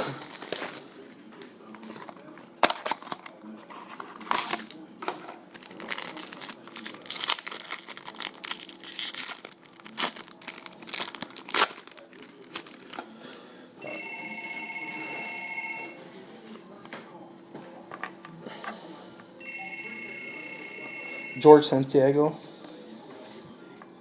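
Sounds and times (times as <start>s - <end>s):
foil pack tearing and crinkling: 0.1s - 1.1s, 5.5s - 13.0s.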